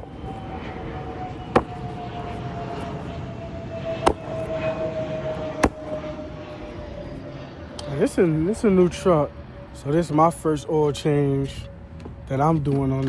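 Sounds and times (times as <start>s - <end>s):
steady drone: 0.0s - 12.3s
floor mat slapped against tree: 1.6s - 1.8s, 5.6s - 5.8s.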